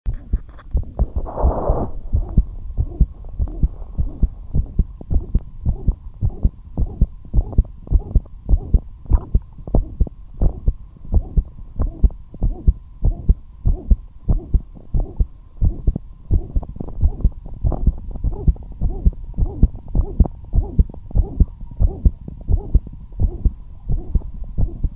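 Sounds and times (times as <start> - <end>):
faint steady hum: 0.1 - 24.9
heartbeat thumps: 0.1 - 24.9
brief scratchy noise: 1.1 - 2.1.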